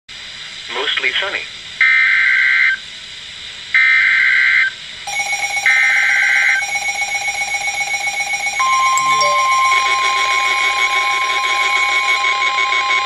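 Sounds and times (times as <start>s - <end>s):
rapidly pulsing alarm tone: 5.1s - 11.9s.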